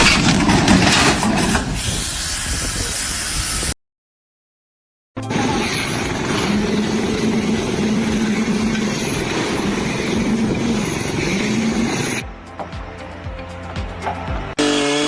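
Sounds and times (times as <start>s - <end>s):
loud machinery humming: 5.2s - 12.2s, 14.6s - 15.0s.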